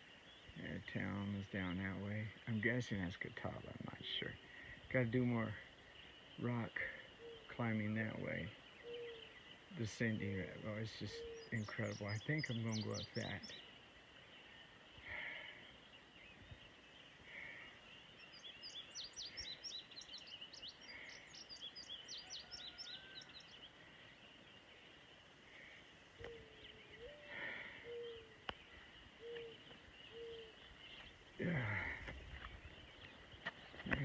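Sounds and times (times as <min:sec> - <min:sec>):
faint steady hiss: 0:00.0 - 0:34.0
low bird notes: 0:26.1 - 0:34.0.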